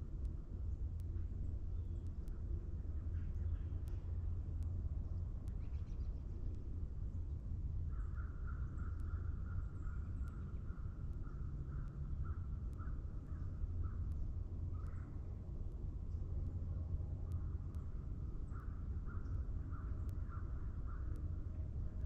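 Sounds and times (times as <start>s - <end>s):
steady low rumble: 0.0s - 22.0s
faint ticks: 0.2s - 2.5s, 3.3s - 7.4s, 17.2s - 20.4s.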